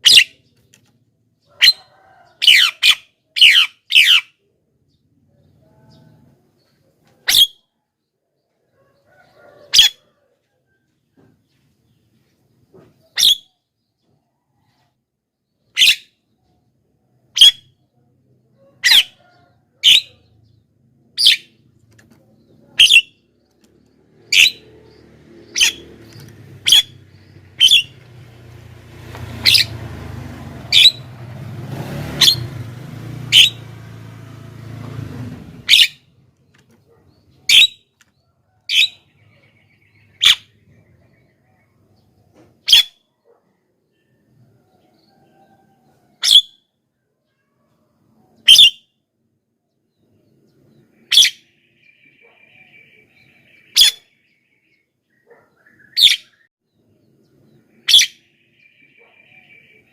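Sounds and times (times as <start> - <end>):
myna bird calls: 0.0 - 4.4, 18.6 - 29.9, 30.6 - 31.3, 35.6 - 43.0, 49.9 - 56.5, 57.5 - 59.9.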